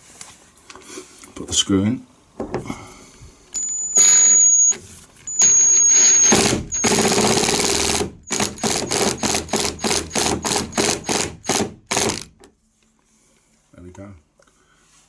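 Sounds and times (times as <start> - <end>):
impact driver motor whine: 3.6 - 12.3
impact driver hammering: 6.1 - 12.4.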